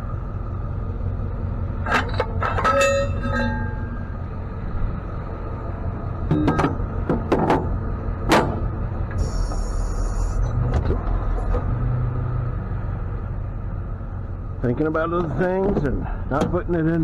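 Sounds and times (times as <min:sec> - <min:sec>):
truck engine rumbling: 0:00.0 - 0:17.0
brief squeaks: 0:09.2 - 0:10.6.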